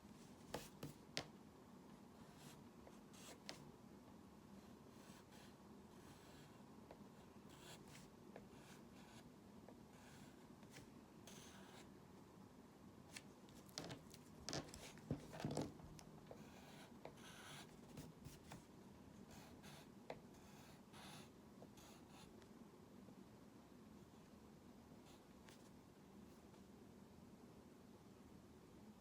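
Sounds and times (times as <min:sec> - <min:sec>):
pen scratching drawing strokes: 0:07.5 - 0:09.2, 0:10.0 - 0:11.8, 0:16.4 - 0:18.6.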